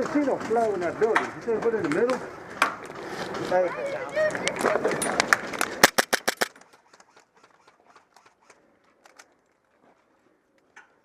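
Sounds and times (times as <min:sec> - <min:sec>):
airsoft gun shots: 0:05.8 - 0:06.6.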